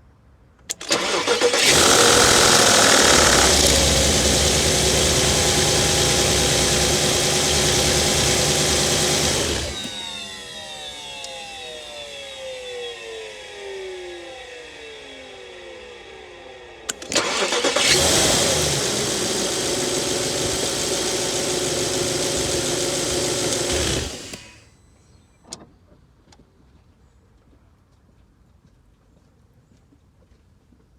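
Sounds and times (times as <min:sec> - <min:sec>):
car engine cranking and starting: 0:00.7 - 0:11.8, 0:16.9 - 0:24.6
falling whines: 0:00.7 - 0:25.4.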